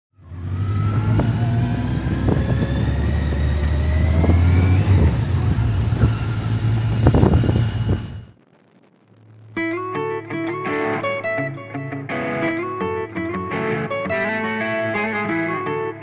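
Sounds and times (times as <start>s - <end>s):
motorcycle engine accelerating: 0.1s - 8.4s
wind and road noise rumble: 0.2s - 9.2s.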